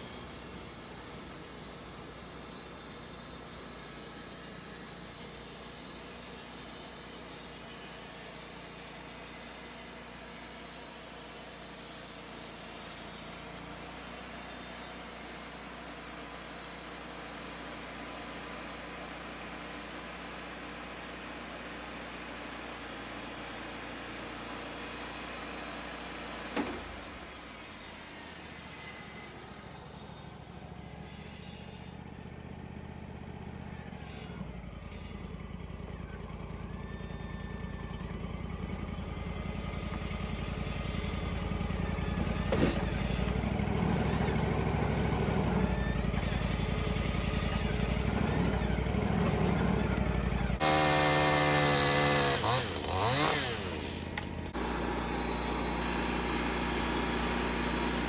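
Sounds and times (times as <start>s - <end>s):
sawmill engine and cutting: 0.0s - 58.0s
engine with shifting pitch: 29.1s - 58.0s.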